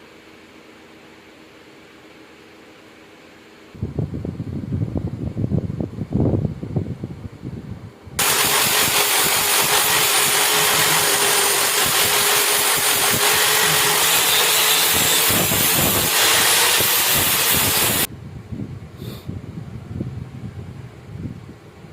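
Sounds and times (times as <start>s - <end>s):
power tool grinding metal: 8.2s - 18.1s.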